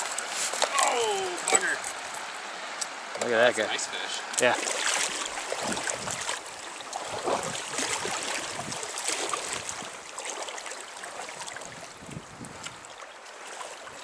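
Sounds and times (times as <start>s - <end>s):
river water rushing and splashing: 0.0s - 14.0s.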